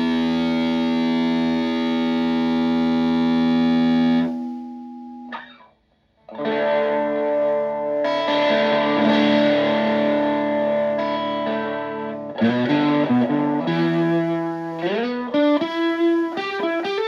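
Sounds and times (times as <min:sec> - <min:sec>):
fuzz electric guitar chords: 0:00.0 - 0:05.6, 0:06.3 - 0:17.0.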